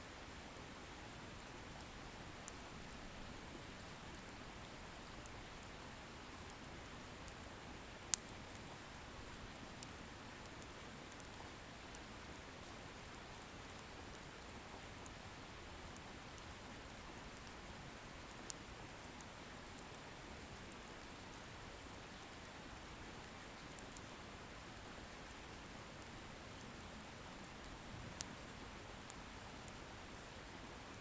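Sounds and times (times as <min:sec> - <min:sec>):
bonfire crackling: 0:06.4 - 0:12.4.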